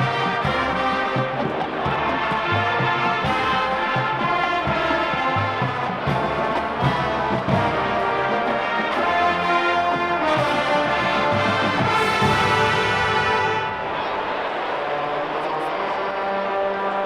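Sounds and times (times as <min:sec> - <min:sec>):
brass sustaining chords: 0:00.0 - 0:17.0.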